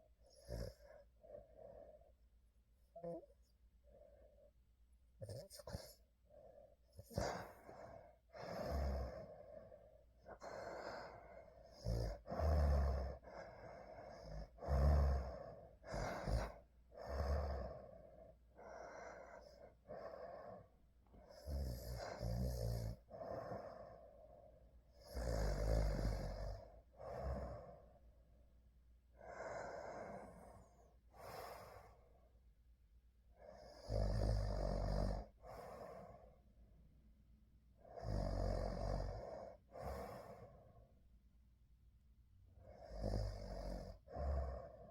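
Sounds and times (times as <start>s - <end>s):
person snoring: 10.3s - 13.2s, 14.1s - 17.9s, 21.3s - 24.0s, 25.0s - 27.8s, 38.0s - 40.4s.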